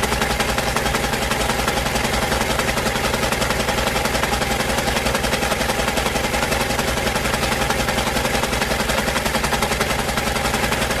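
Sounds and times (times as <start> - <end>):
sewing machine running: 0.0 - 11.0.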